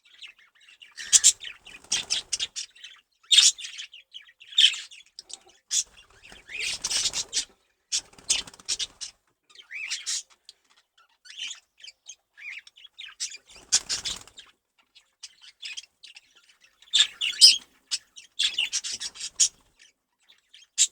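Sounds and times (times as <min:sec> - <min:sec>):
budgerigars chattering and squawking: 0:00.1 - 0:20.9
wings flapping: 0:01.1 - 0:02.5, 0:05.9 - 0:09.1, 0:13.5 - 0:14.4.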